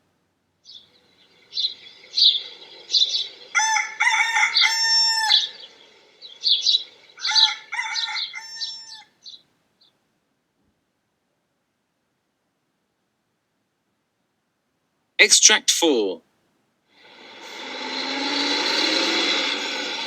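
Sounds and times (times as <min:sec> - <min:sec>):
small birds chirping: 0:00.5 - 0:10.0
rooster crowing: 0:02.9 - 0:09.2.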